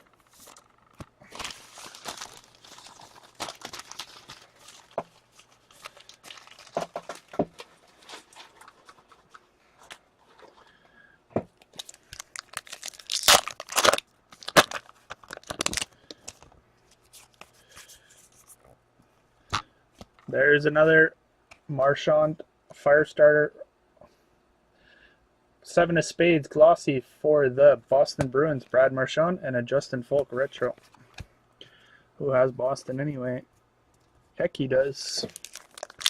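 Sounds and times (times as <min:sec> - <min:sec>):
foil wrapper tearing and crinkling: 0:00.4 - 0:09.1, 0:11.7 - 0:16.5, 0:35.3 - 0:36.0.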